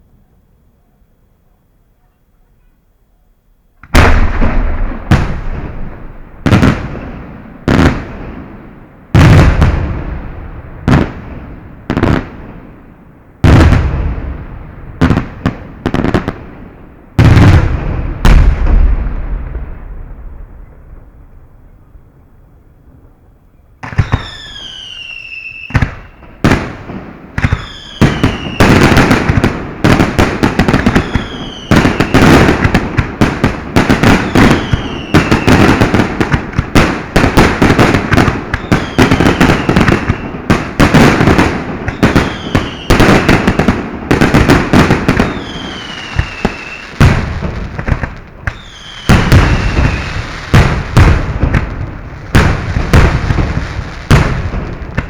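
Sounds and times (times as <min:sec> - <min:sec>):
fireworks cracks and bangs: 0:03.8 - 0:55.0
falling firework whistle: 0:23.8 - 0:26.4, 0:27.4 - 0:29.0, 0:30.9 - 0:32.4, 0:34.2 - 0:35.8, 0:38.5 - 0:40.4, 0:41.9 - 0:43.3, 0:45.2 - 0:47.1, 0:48.5 - 0:50.4.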